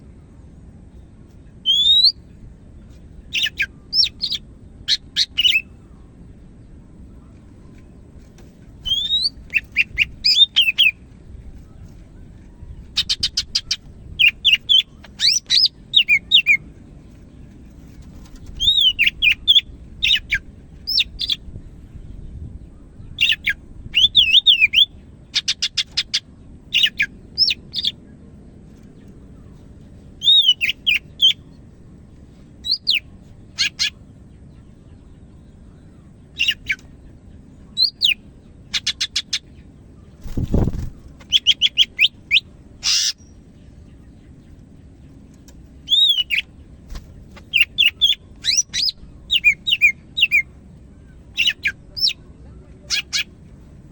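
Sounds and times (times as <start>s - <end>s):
bird singing whistles and trills: 1.6s - 2.2s, 3.3s - 5.8s, 8.8s - 11.0s, 12.5s - 16.6s, 18.4s - 21.4s, 22.7s - 28.0s, 30.2s - 31.4s, 32.6s - 33.0s, 37.7s - 39.4s, 40.2s - 43.4s, 45.8s - 46.5s, 47.5s - 50.5s.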